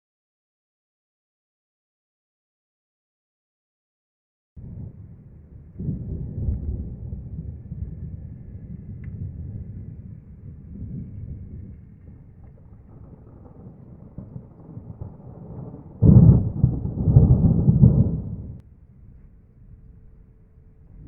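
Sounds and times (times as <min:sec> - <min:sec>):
loud thunder clap rolling: 0:04.6 - 0:18.6
faint low thunder rumble: 0:04.6 - 0:21.0.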